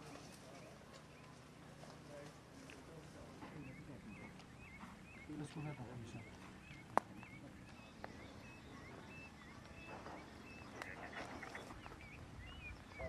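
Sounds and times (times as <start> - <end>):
bird calls whistling: 3.6 - 13.0.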